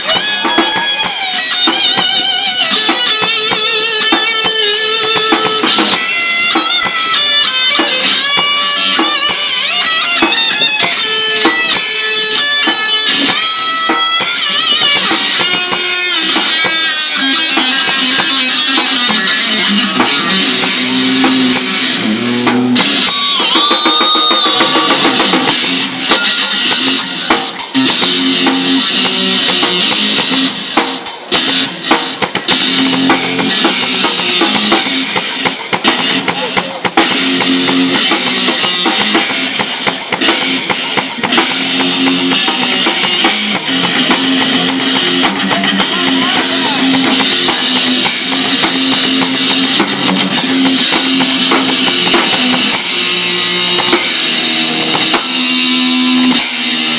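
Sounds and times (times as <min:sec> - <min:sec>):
rock music with drums and guitars: 0:00.0 - 0:56.9
bent guitar note: 0:14.6 - 0:30.6, 0:40.2 - 0:56.9.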